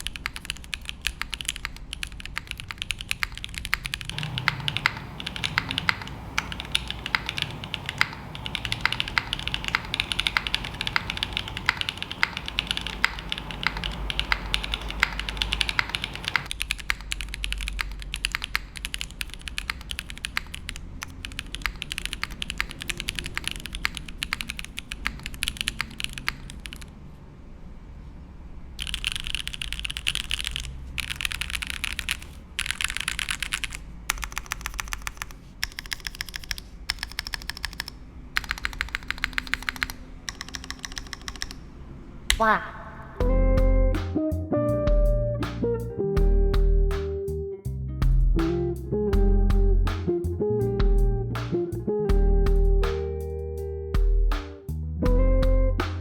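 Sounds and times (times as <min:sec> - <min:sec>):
mechanical keyboard typing: 0:00.0 - 0:26.9, 0:28.8 - 0:41.7.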